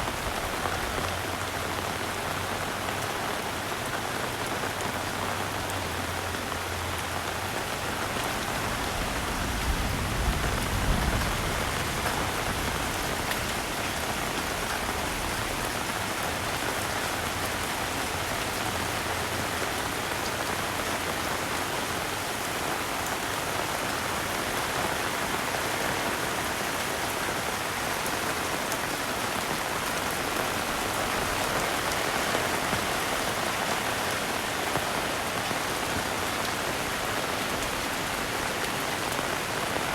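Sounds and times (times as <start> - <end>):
heavy rain falling: 0.0 - 39.9.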